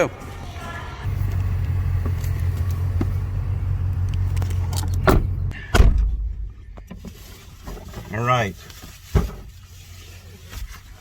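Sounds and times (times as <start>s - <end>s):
car engine rumble: 0.0s - 11.0s
car door shutting: 4.7s - 6.3s.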